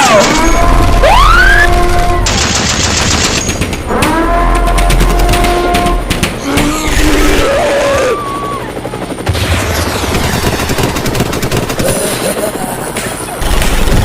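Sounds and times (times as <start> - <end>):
wailing tones: 0.0 - 2.3, 3.9 - 8.8
rapid gunfire: 0.0 - 7.4, 9.3 - 14.0.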